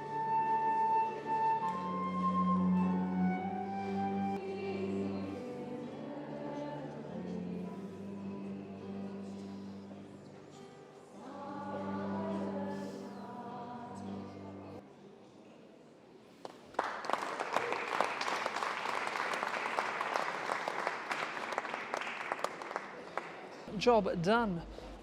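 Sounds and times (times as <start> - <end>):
choir singing held notes: 0.0 - 9.8, 11.1 - 14.8
audience applause: 16.4 - 23.7.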